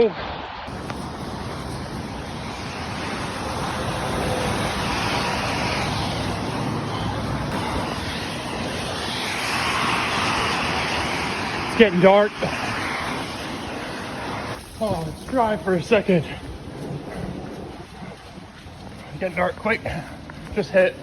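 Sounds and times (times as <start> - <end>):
road traffic rumble: 0.5 - 21.0
tyre hiss on wet road: 0.6 - 21.0.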